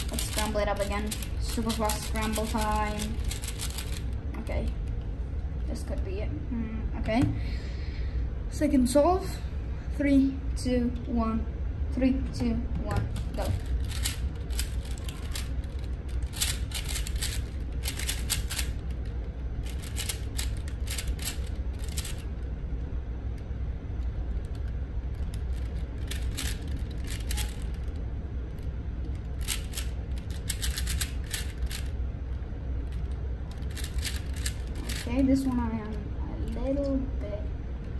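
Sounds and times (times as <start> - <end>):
steady low hum: 0.0 - 37.9
plastic puzzle cube clicking: 13.8 - 19.0, 19.6 - 22.2, 29.2 - 31.9.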